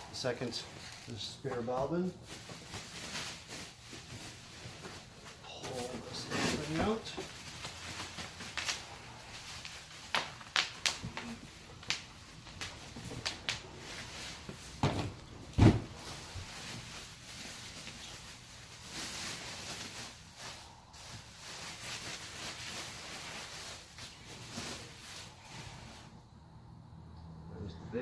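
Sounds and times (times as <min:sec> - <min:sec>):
soft rustling: 0:00.1 - 0:26.2
heavy thumps: 0:14.4 - 0:16.1.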